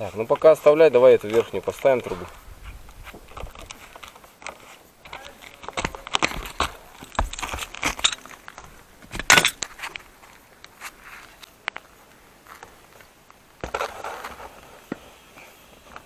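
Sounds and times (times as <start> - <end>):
metal pipe clattering and scraping: 7.9 - 8.4, 9.1 - 9.9.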